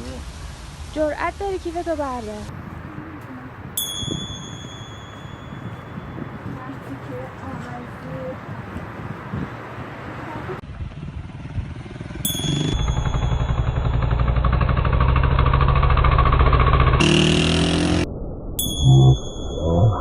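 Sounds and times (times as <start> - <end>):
short chime: 3.8 - 6.6, 12.3 - 14.4, 18.6 - 19.9
fast-pulsing mechanical rattle: 12.1 - 17.9.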